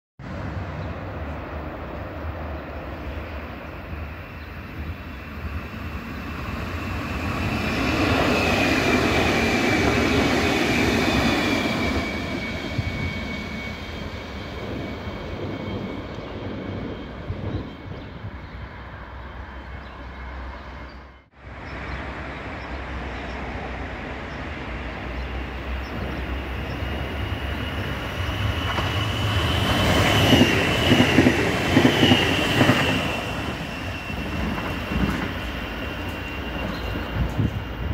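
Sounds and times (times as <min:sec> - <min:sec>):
electric train passing with whine: 0:00.2 - 0:37.9
train approaching with high whine: 0:00.2 - 0:37.9.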